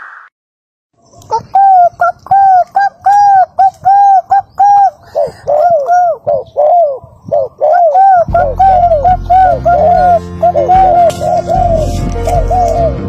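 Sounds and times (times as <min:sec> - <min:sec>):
dove cooing: 0:01.2 - 0:13.0.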